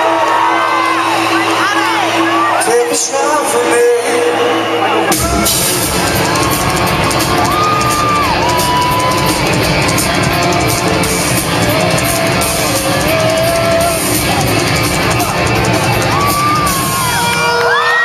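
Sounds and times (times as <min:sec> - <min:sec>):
sliding electric guitars: 0:00.0 - 0:18.0
drum kit with busy cymbals: 0:05.1 - 0:17.4.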